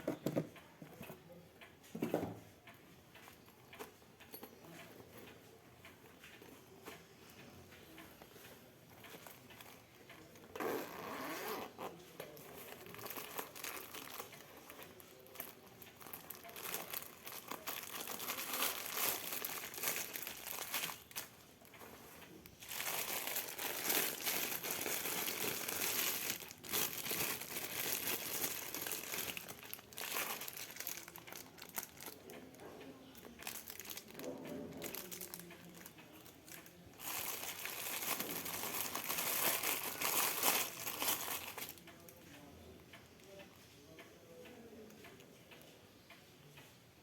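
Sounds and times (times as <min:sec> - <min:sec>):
packaging crinkling: 0:12.7 - 0:21.8, 0:22.5 - 0:32.2, 0:33.4 - 0:35.9, 0:36.6 - 0:41.8.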